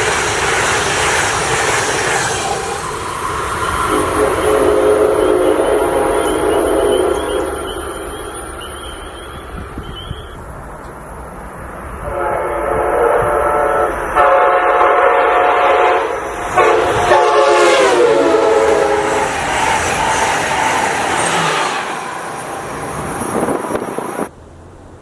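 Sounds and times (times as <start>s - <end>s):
passing train noise: 0.0s - 25.0s
train air horn blasts: 2.6s - 10.2s, 12.0s - 20.4s.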